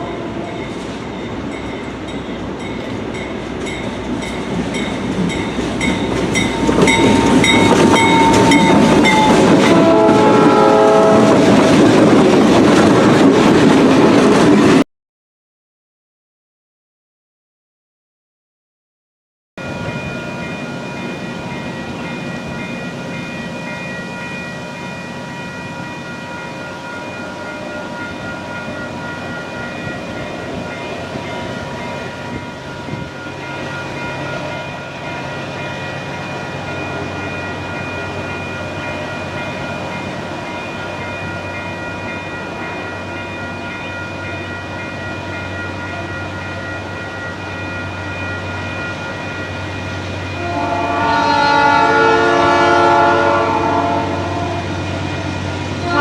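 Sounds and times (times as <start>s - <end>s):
diesel locomotive engine rumble: 0.0s - 14.8s, 19.6s - 56.0s
high-pitched tones: 44.4s - 50.3s.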